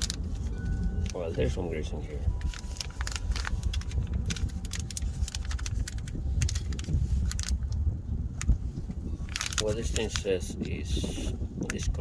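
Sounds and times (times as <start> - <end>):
packet and washers rattling: 0.0 - 7.8, 9.2 - 10.8.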